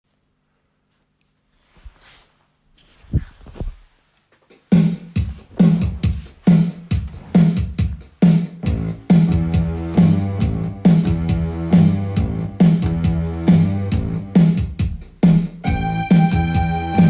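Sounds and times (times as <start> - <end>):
drum machine beat: 4.5 - 17.0
keyboard chords: 8.6 - 14.7, 15.6 - 17.0.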